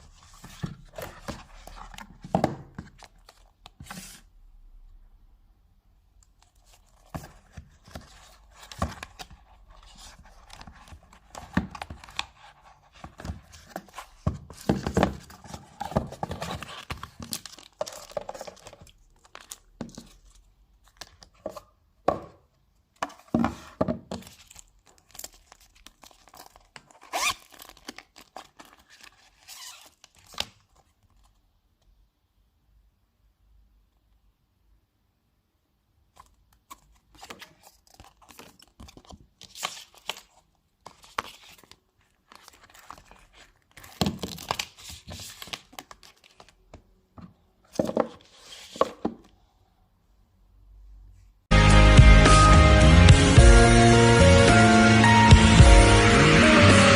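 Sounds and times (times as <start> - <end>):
packaging tearing and crinkling: 24.3 - 30.4.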